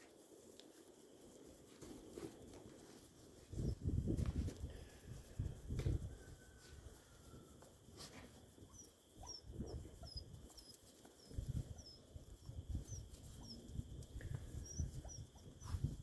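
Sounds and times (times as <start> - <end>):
soft bumps and jostling: 1.6 - 4.8.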